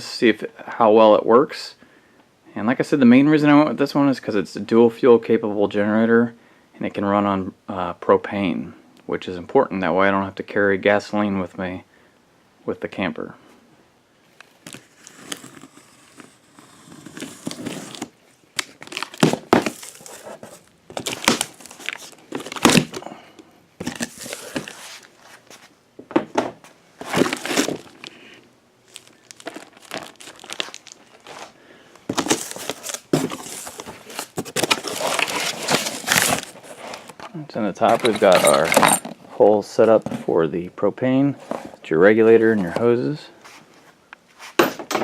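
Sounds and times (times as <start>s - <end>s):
cardboard and plastic crinkling: 14.4s - 25.7s, 27.0s - 39.2s.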